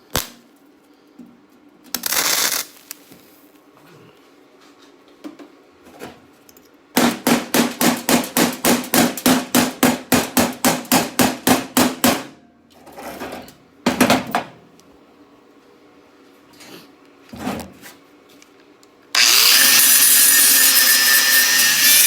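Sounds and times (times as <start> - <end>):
hammer striking sheet steel: 19.5 - 22.0.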